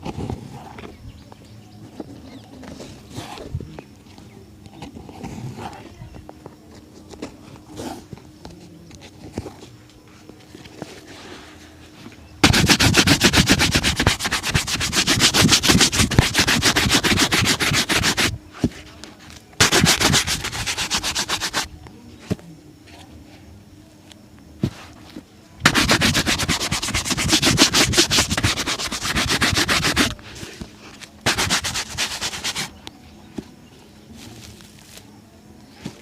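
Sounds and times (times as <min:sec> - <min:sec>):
brush scrubbing a shoe: 0:12.4 - 0:18.4, 0:19.6 - 0:21.7, 0:25.6 - 0:30.2, 0:31.2 - 0:32.7.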